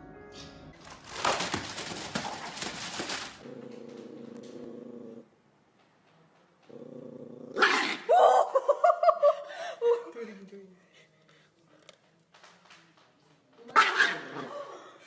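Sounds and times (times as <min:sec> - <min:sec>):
rustling clatter: 0:00.8 - 0:04.1.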